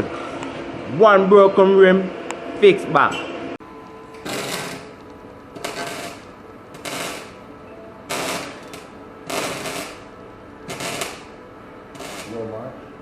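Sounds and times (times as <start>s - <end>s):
power tool bursts: 4.2s - 5.0s, 5.6s - 7.4s, 8.1s - 10.0s, 10.7s - 11.3s, 11.9s - 12.4s.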